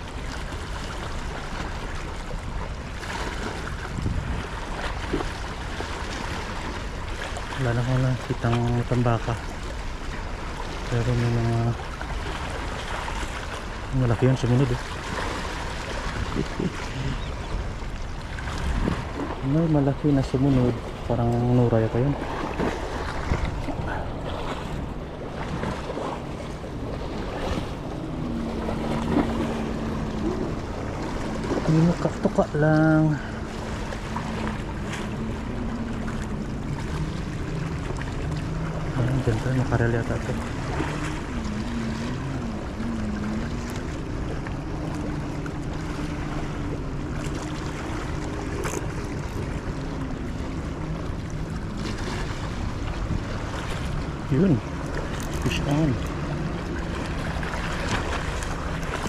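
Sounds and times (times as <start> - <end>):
sea water washing ashore: 0.0 - 59.0
steady low hum: 0.0 - 59.0
wind on microphone: 2.3 - 5.4, 15.8 - 19.7, 20.6 - 32.7.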